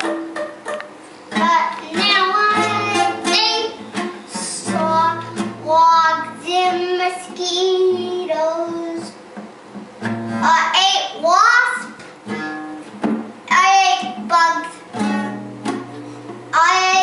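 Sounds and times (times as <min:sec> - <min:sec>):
guitar accompaniment: 0:00.0 - 0:17.0
child singing: 0:01.4 - 0:09.2, 0:10.4 - 0:12.0, 0:13.5 - 0:15.3, 0:16.5 - 0:17.0.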